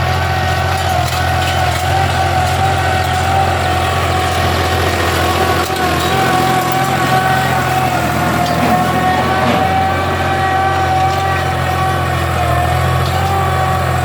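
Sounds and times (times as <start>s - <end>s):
tractor engine droning: 0.0s - 14.0s.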